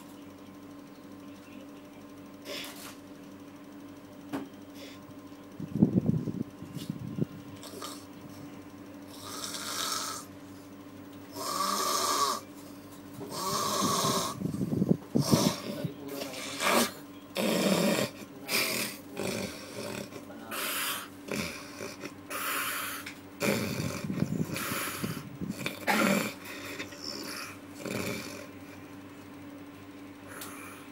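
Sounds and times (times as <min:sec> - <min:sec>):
steady background hum: 0:00.0 - 0:30.9
person snoring: 0:07.6 - 0:08.1, 0:09.1 - 0:10.3, 0:11.3 - 0:12.5, 0:13.3 - 0:28.6, 0:30.3 - 0:30.9.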